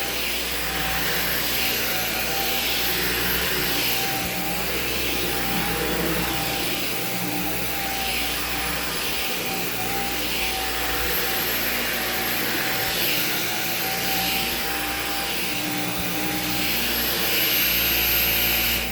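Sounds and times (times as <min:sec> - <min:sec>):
stick vacuum motor whine: 0:00.0 - 0:18.9.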